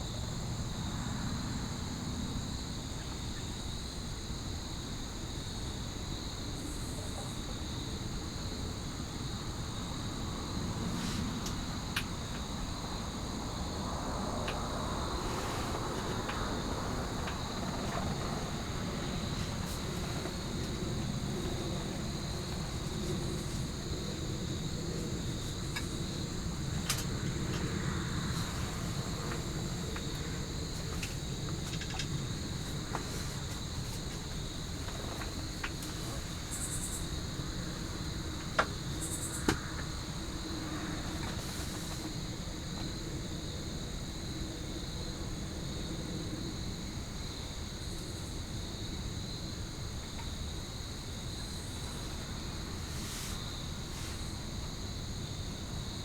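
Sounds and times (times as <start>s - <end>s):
crickets trilling: 0.0s - 56.0s.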